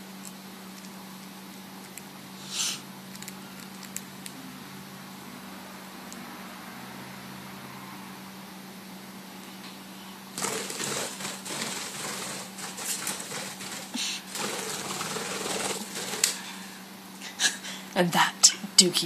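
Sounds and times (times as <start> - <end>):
bird claws rattling wire cage: 10.4 - 16.5.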